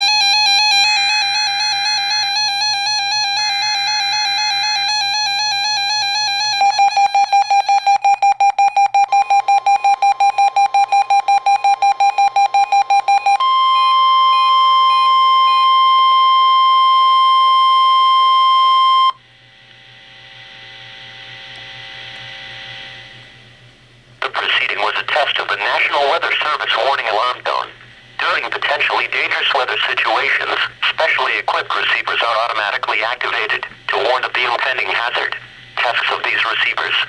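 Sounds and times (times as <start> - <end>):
steady warning alarm tone: 0.0 - 19.2
rapid electronic beeping: 0.1 - 16.4
faint hiss and hum: 19.2 - 37.0.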